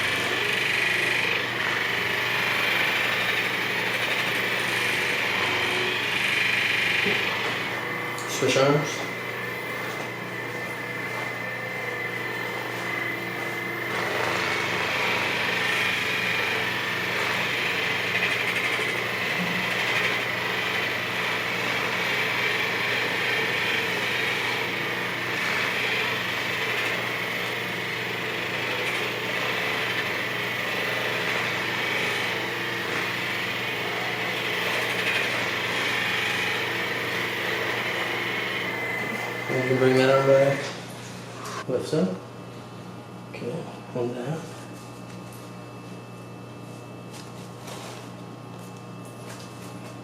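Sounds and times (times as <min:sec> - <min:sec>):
massage gun motor buzzing: 0:00.0 - 0:41.7.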